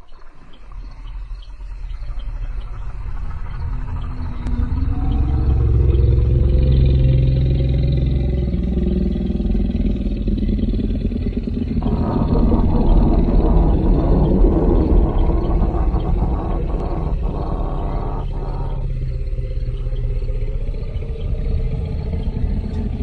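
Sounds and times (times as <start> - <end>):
deep growling roar: 1.8 - 23.0.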